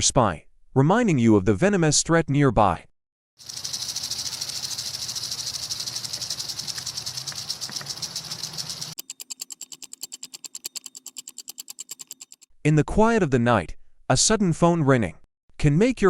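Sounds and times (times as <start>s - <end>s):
rattlesnake tail rattling: 3.4s - 12.4s
evenly spaced sharp clicks: 3.4s - 12.5s.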